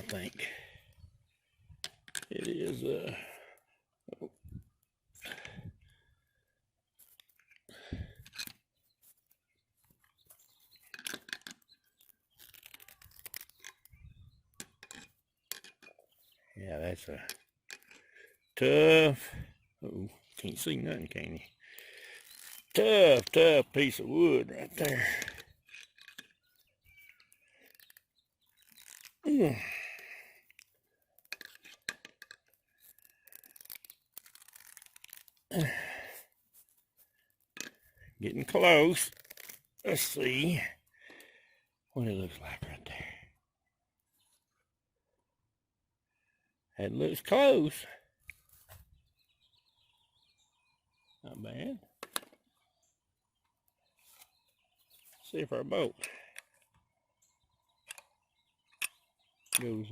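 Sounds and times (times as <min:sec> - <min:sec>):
wood crunching and creaking: 0:07.0 - 0:16.3, 0:20.4 - 0:40.2.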